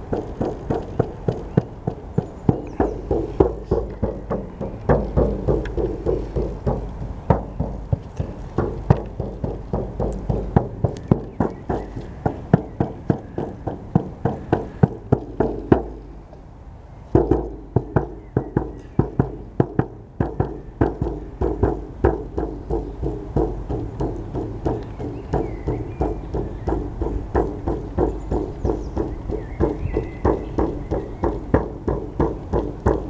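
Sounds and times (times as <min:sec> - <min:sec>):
frame drum beaten in rhythm: 0:17.3 - 0:33.0.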